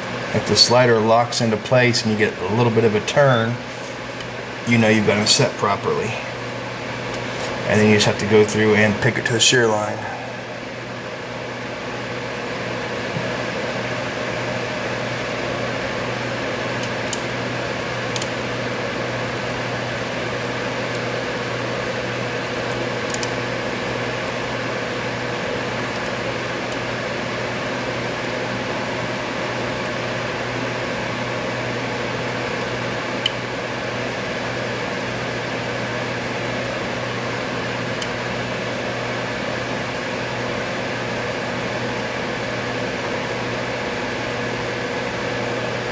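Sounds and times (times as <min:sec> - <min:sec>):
steady mechanical hum: 0:00.0 - 0:45.9
lock pick clicking: 0:23.0 - 0:23.4.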